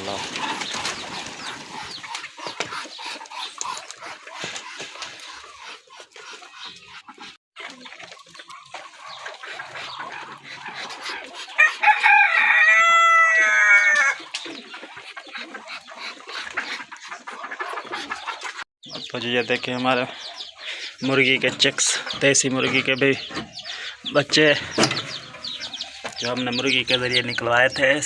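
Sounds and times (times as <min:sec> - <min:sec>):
chickens clucking: 0:00.0 - 0:28.0
rooster crowing: 0:11.6 - 0:14.2.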